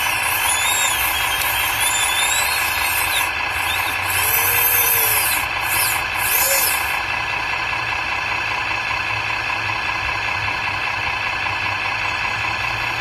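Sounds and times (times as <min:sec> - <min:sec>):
squealing tones: 0:00.0 - 0:07.0
model truck mechanical whirr: 0:00.0 - 0:13.0.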